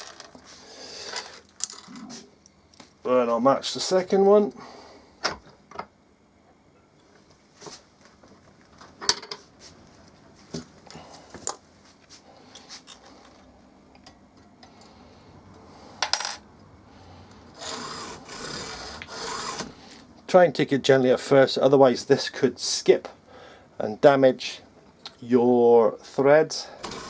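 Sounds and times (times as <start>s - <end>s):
hacksaw cutting metal: 17.6s - 19.8s, 26.8s - 27.0s.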